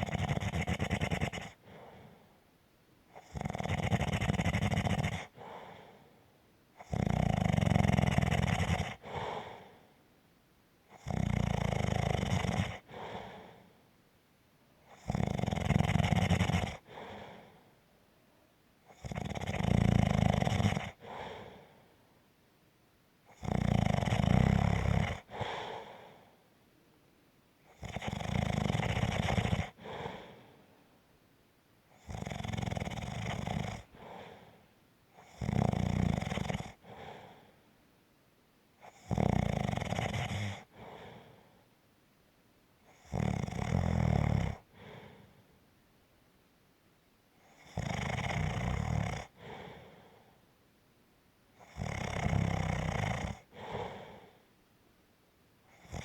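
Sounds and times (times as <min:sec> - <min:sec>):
rattling snores: 0:00.0 - 0:02.2, 0:03.2 - 0:05.9, 0:06.8 - 0:09.7, 0:10.9 - 0:13.6, 0:14.9 - 0:17.5, 0:18.9 - 0:21.6, 0:23.3 - 0:26.0, 0:27.7 - 0:30.4, 0:31.9 - 0:34.5, 0:35.2 - 0:37.5, 0:38.8 - 0:41.3, 0:42.9 - 0:45.1, 0:47.4 - 0:49.9, 0:51.6 - 0:54.3, 0:55.7 - 0:56.0.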